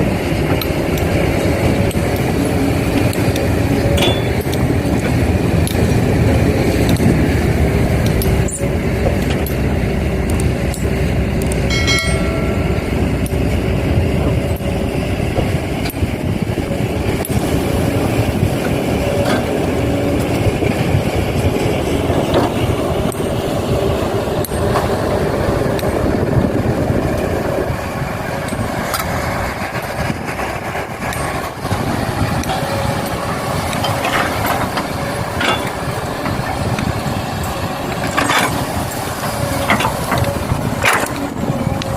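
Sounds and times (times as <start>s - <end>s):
dump truck engine running: 0.0s - 41.9s
excavator engine running: 0.0s - 41.9s
brief high tone: 11.7s - 13.1s.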